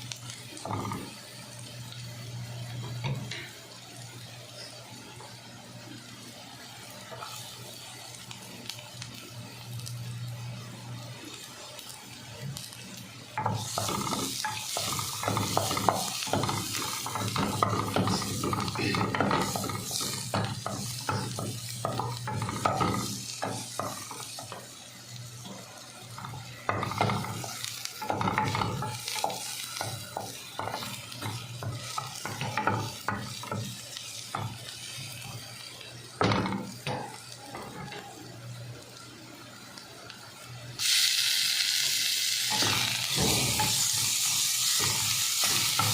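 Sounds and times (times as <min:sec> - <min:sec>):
chicken sizzling in a pan: 0:00.0 - 0:45.9
utensil scraping and clattering on pan: 0:13.4 - 0:24.7, 0:25.4 - 0:35.1, 0:42.5 - 0:45.9
loud hiss: 0:40.8 - 0:45.9.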